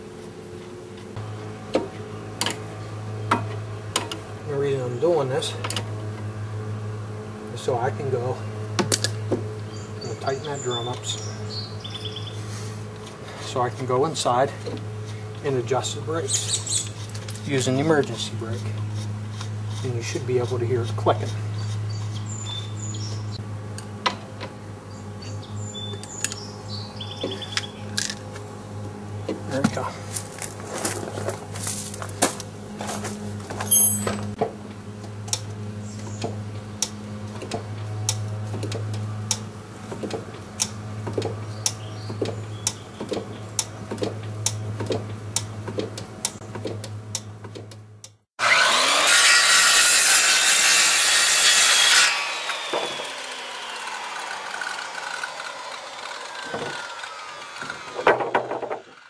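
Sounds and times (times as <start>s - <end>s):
brake self-adjuster clicking: 36.1s - 48.2s.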